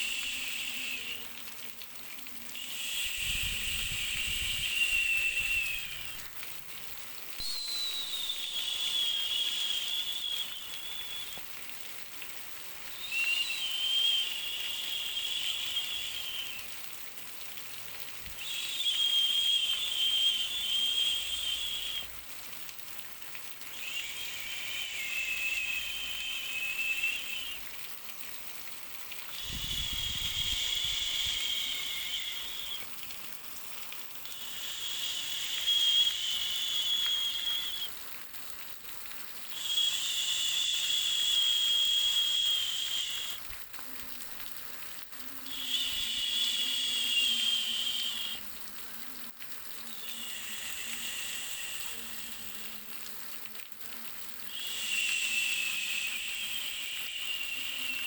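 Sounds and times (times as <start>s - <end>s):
high-pitched hissing buzz: 0.0s - 1.2s, 2.6s - 6.3s, 7.4s - 11.4s, 12.9s - 16.7s, 18.3s - 22.1s, 23.7s - 27.6s, 29.3s - 32.9s, 34.3s - 37.9s, 39.5s - 43.4s, 45.5s - 48.4s, 49.8s - 52.9s, 54.5s - 58.0s
faint steady hiss: 0.0s - 58.0s.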